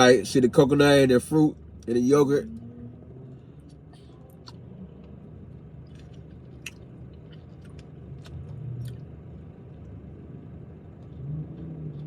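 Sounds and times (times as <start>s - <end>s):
mouth clicks and smacks: 5.8s - 9.1s
person chewing: 5.8s - 9.1s.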